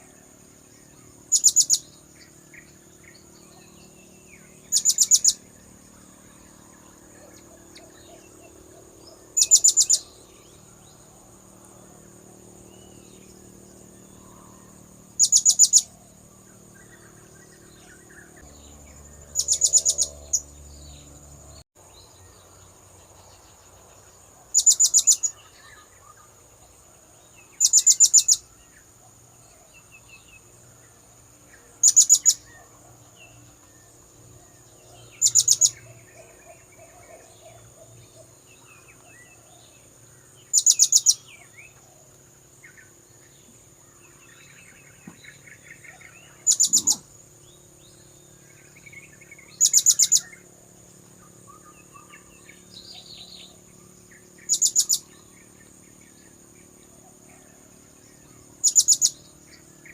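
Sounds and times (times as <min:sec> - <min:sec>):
parrot calling: 0:46.4 - 0:47.1.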